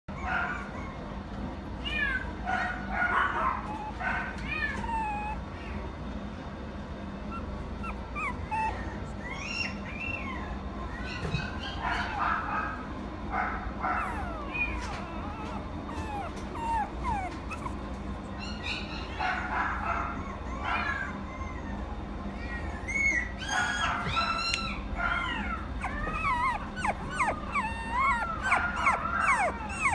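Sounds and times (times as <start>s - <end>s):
puppy whining and whimpering: 0.1s - 1.2s, 3.0s - 6.2s, 6.9s - 12.5s, 13.8s - 29.9s
steady low hum: 0.1s - 29.9s.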